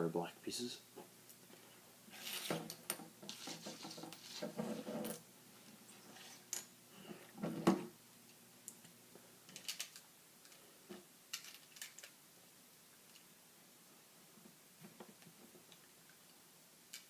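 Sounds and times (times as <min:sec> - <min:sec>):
plastic bricks clicking together: 0:11.3 - 0:12.2.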